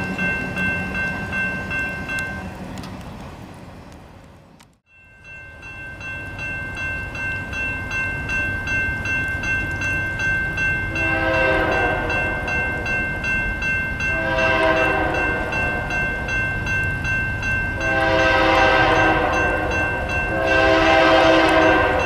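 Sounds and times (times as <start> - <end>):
crossing bell ringing: 0.0 - 2.6, 4.9 - 22.0
train rumbling: 0.0 - 22.0
locomotive horn blasts: 10.9 - 12.4, 14.1 - 15.7, 17.8 - 22.0.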